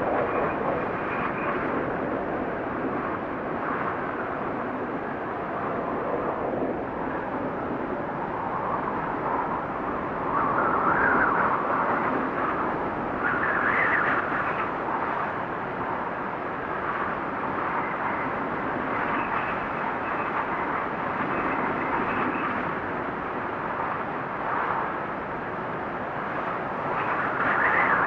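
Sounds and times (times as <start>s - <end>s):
blizzard wind blowing: 0.0s - 28.0s.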